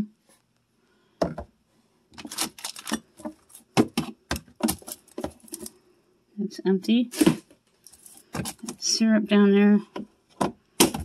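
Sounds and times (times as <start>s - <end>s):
bottles and jars clattering: 2.2s - 5.7s.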